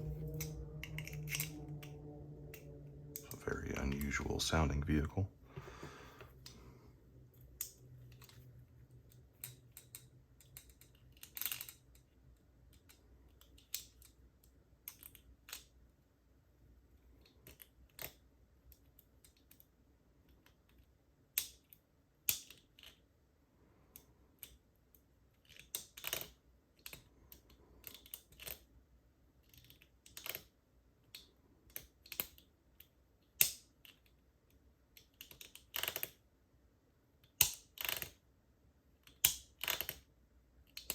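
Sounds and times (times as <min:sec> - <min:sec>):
lock pick clicking in padlock: 0:33.4 - 0:34.0, 0:37.3 - 0:38.2, 0:39.0 - 0:40.0.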